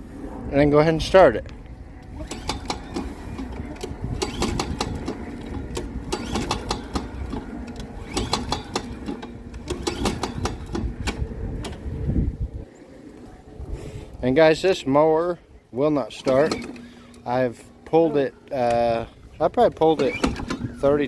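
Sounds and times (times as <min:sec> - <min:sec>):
recoil starter rattling: 0:02.2 - 0:11.9, 0:16.1 - 0:21.0.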